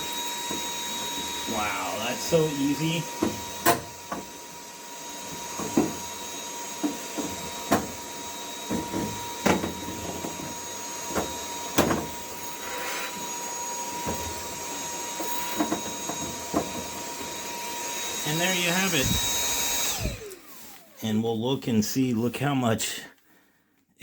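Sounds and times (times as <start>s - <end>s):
vacuum cleaner whining: 0.0s - 21.2s.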